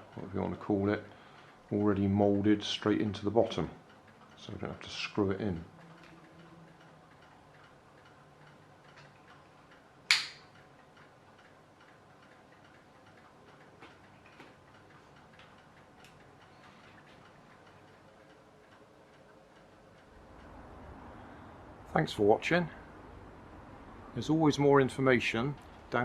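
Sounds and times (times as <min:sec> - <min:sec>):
faint clock ticking: 0:00.0 - 0:26.0
loud sharp click: 0:10.1 - 0:10.6.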